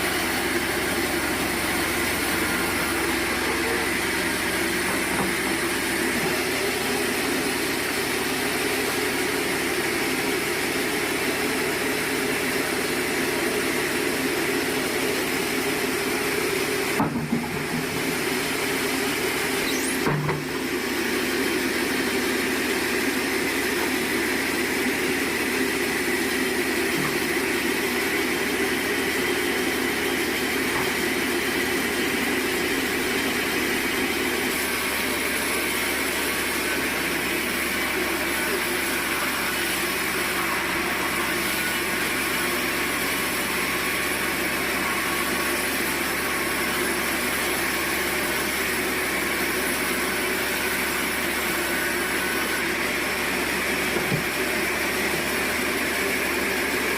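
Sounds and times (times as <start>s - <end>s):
sawmill machinery running: 0.0s - 56.9s.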